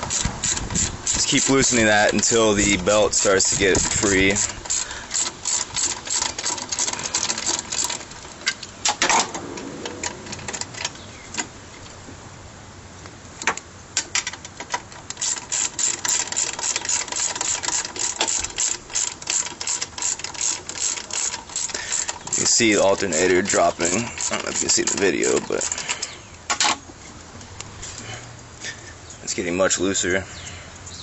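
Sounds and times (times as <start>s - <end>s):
socket ratchet clicking: 0.0s - 8.0s, 14.1s - 26.2s.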